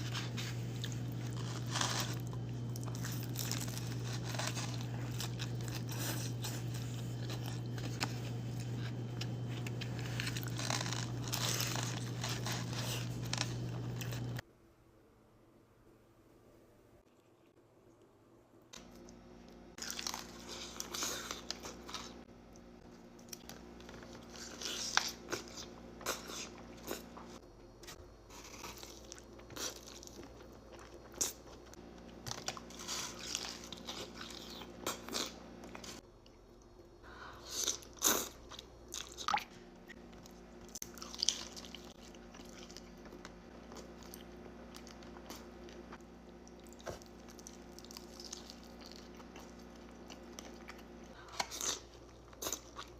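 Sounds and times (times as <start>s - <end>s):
crunchy bites and chewing: 0.0s - 14.4s, 19.8s - 22.6s, 23.2s - 36.0s, 37.4s - 52.9s.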